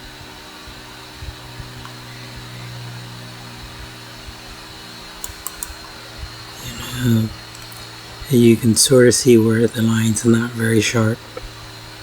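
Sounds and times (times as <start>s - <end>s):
fan-like hiss: 0.0s - 12.0s
low electrical hum: 0.0s - 12.0s
faint clicks: 5.2s - 5.9s, 7.5s - 7.9s.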